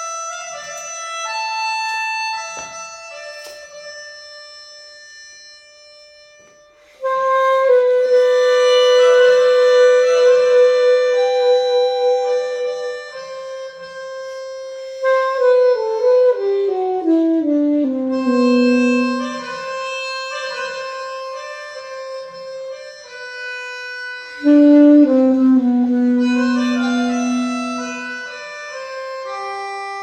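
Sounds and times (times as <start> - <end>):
melodica: 0.0 - 30.0
alto saxophone: 6.9 - 30.0.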